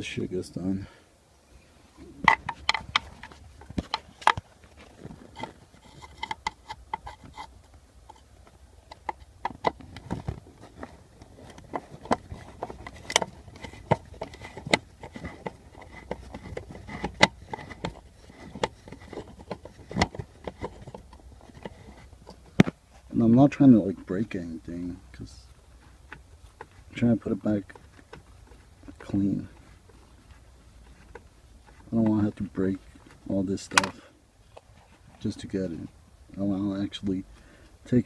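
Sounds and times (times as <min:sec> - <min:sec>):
plastic trim clicking and knocking: 0:08.9 - 0:22.8.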